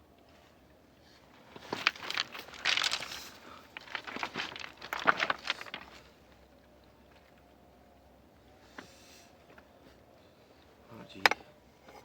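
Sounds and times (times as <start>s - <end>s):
rustling and crinkling: 0.2s - 7.6s.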